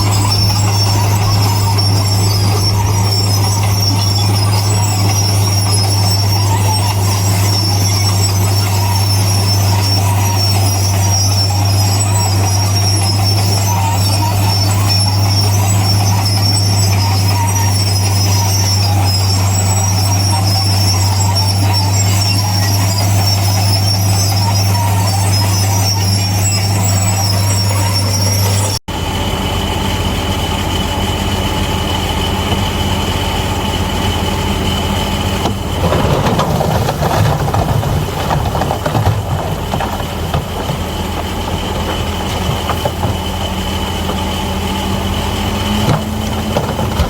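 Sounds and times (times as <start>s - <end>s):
high whine: 0.0s - 20.6s
bulldozer diesel engine running: 0.0s - 47.0s.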